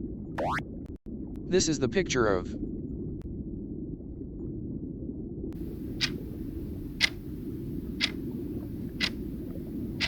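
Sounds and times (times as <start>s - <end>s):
low rumbling background: 0.0s - 10.0s
timer ticking: 5.6s - 10.0s.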